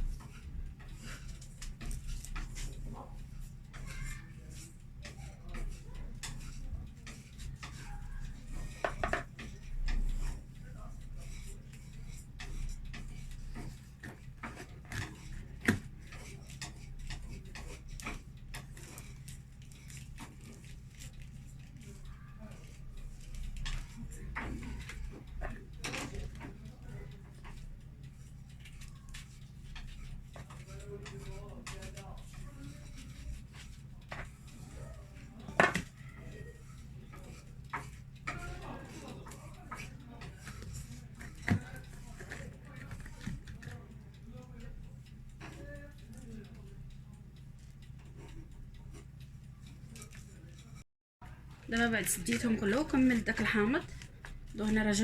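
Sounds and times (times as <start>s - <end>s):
kitchen utensils knocking and clicking: 0.0s - 10.4s, 35.4s - 35.9s
steady low hum: 0.0s - 55.0s.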